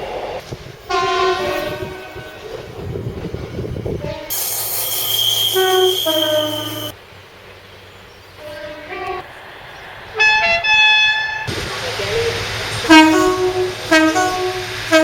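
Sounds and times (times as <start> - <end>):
running train rumble and hiss: 0.0 - 15.0
train horn sounding two tones: 0.9 - 2.4, 4.0 - 7.0, 8.4 - 9.2, 12.9 - 15.0.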